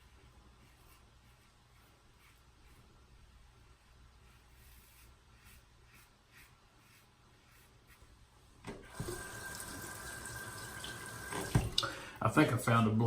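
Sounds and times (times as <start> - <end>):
razor scraping skin: 4.3 - 8.0
tap water running into sink: 8.7 - 12.0.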